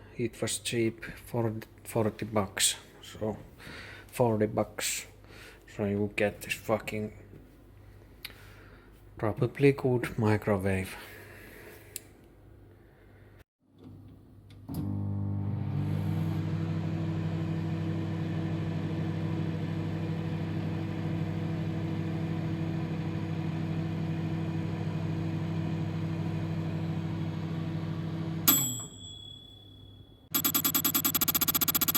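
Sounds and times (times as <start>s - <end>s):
microwave oven humming: 14.7s - 29.4s, 30.4s - 31.9s
microwave timer bell ding: 28.5s - 31.9s.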